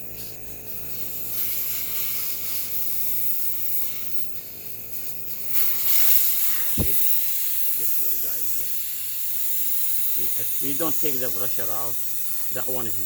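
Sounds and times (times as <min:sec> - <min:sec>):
air hissing from tire valve: 0:00.0 - 0:13.0.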